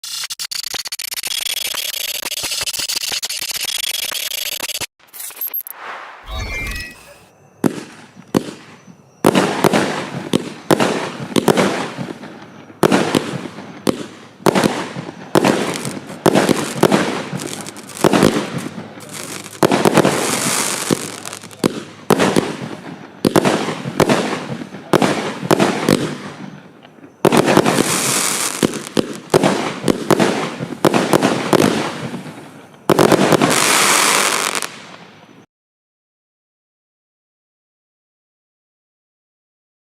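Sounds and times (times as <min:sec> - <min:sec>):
firework battery shots and bursts: 0:00.0 - 0:35.4
hissing firework crackle: 0:07.6 - 0:35.4.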